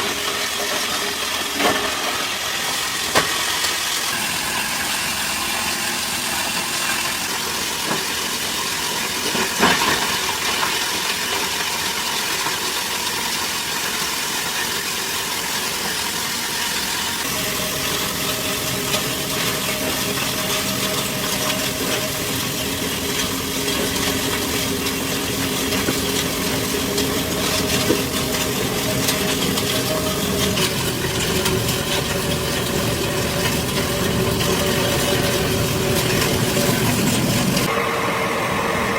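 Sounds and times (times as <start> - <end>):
factory machinery running: 0.0 - 13.1, 13.8 - 38.9
deep machine hum with tones: 17.2 - 38.9.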